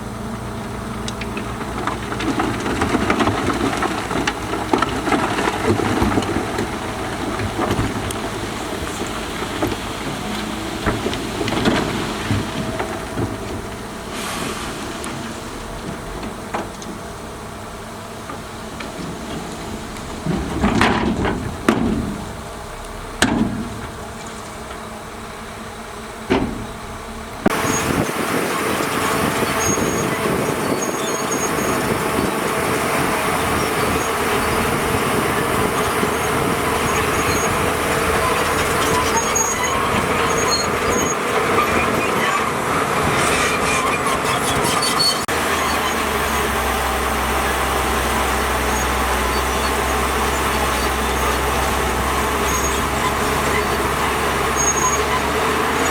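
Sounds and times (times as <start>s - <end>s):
heavy machinery engine running: 0.0s - 55.9s
machinery squeals and clanks: 26.2s - 55.9s.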